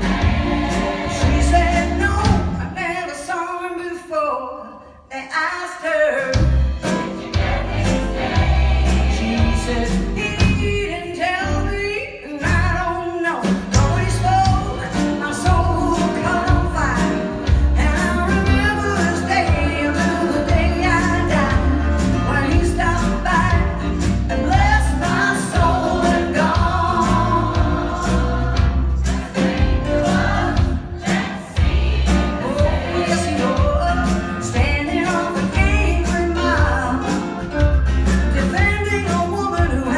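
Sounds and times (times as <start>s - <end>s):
bass line: 0.0s - 2.7s, 6.4s - 12.9s, 13.8s - 39.9s
drum beat: 0.0s - 2.7s, 6.4s - 10.8s, 13.5s - 22.8s, 23.4s - 39.9s
choir and lead singer singing: 0.0s - 2.8s, 6.3s - 10.6s, 14.4s - 23.6s, 24.4s - 37.4s.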